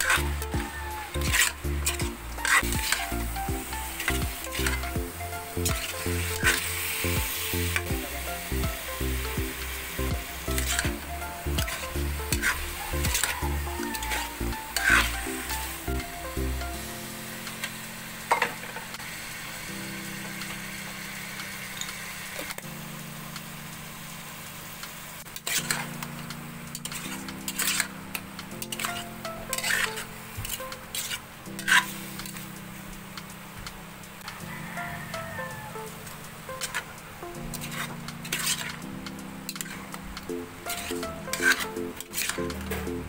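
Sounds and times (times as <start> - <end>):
background music with bass line: 0.0 - 17.6, 34.4 - 43.0
food sizzling in a hot pan: 0.0 - 33.5, 34.1 - 42.5
utensil tapping and scraping pan: 37.5 - 38.8, 40.7 - 42.8.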